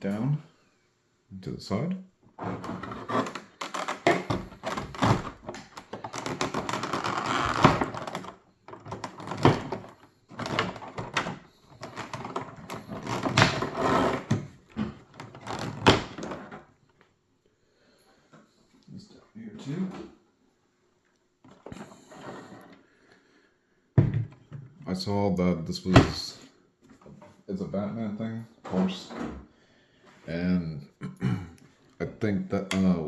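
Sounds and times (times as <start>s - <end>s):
knocks and thuds: 24.0s - 24.7s.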